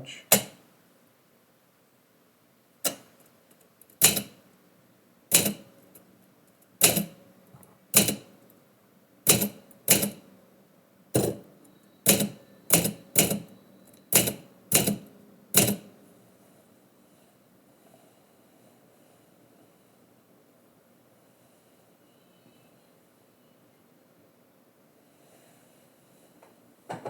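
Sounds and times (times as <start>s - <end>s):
typewriter keys clacking: 3.8s - 4.4s, 5.3s - 5.7s, 6.8s - 7.2s, 8.0s - 8.3s, 9.3s - 10.2s, 11.2s - 11.4s, 12.1s - 15.9s.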